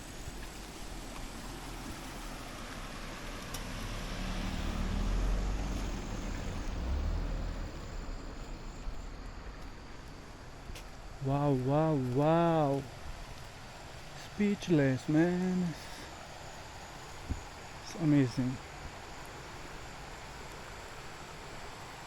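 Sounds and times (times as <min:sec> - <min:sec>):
vehicle passing on road: 0:00.0 - 0:11.2.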